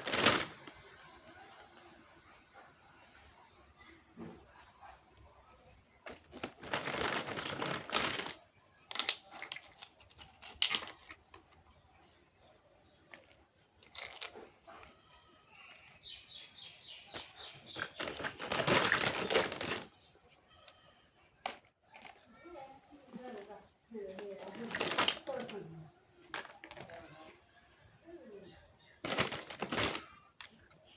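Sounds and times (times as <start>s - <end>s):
plastic packaging crinkling: 0.0s - 0.9s, 6.1s - 11.2s, 17.1s - 19.9s, 24.2s - 25.6s, 29.0s - 30.5s.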